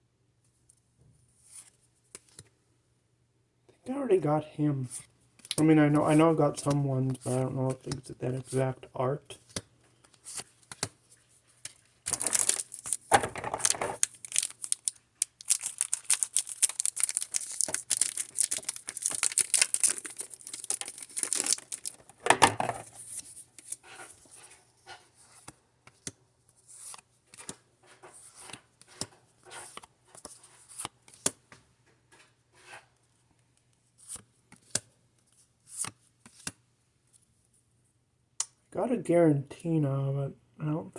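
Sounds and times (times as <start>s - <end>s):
foil wrapper tearing and crinkling: 12.1s - 22.2s.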